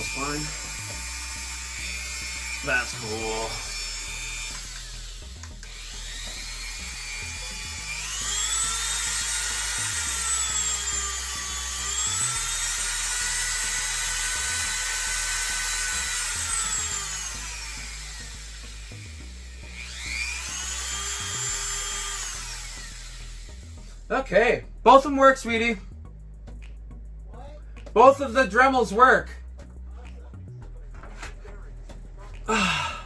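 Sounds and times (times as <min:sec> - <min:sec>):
rotary tool motor whining: 0:00.0 - 0:24.1.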